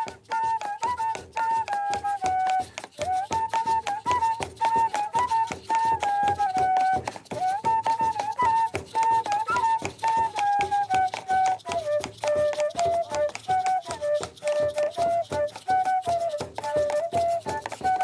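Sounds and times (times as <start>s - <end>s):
cane flute melody: 0.0s - 18.0s.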